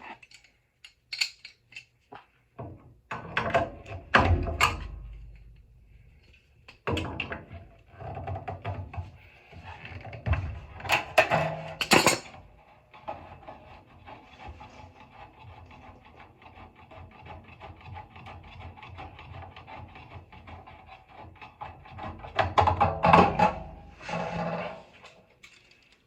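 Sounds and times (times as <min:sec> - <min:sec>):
metal knocks and clatter: 0:22.3 - 0:24.9.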